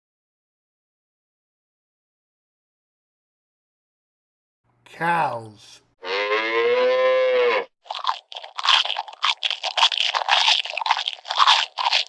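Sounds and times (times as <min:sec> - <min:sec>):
cow mooing: 0:06.0 - 0:07.7
cow chewing: 0:07.9 - 0:12.0.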